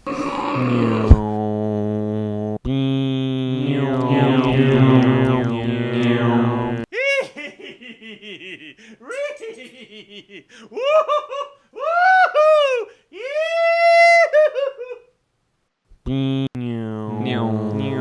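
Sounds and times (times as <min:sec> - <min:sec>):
person laughing: 0:06.9 - 0:13.4.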